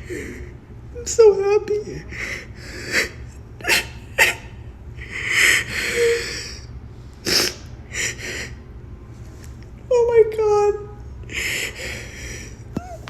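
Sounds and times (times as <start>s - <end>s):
person sobbing and sniffing: 11.3s - 13.0s.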